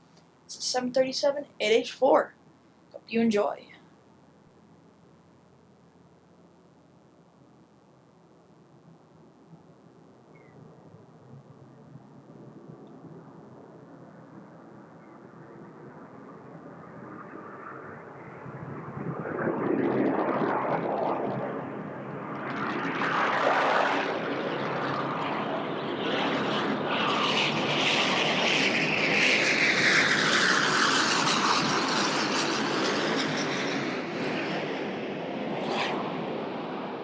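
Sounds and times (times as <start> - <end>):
jet engine whine passing: 10.8 - 37.0.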